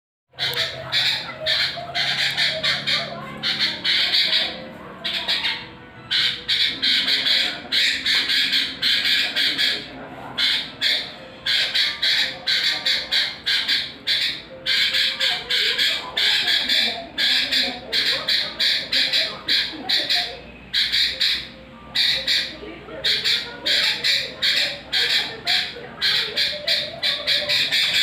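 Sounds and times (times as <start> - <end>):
bulbul calling harsh notes: 10.4 - 19.8.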